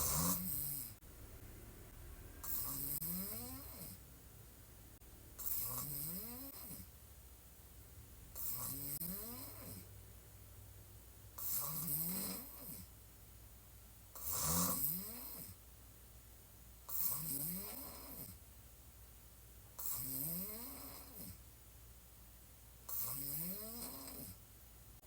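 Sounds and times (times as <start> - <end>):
woman snoring: 0.0 - 1.0, 2.4 - 4.0, 5.4 - 6.9, 8.4 - 9.9, 11.4 - 12.9, 14.2 - 15.6, 16.9 - 18.4, 19.8 - 21.4, 22.9 - 24.4.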